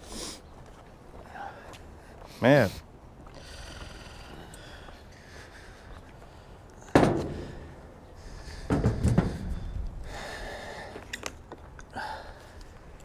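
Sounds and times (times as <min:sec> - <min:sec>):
heavy thump: 0:06.9 - 0:07.6, 0:08.7 - 0:09.6
knocks and thuds: 0:08.7 - 0:09.6.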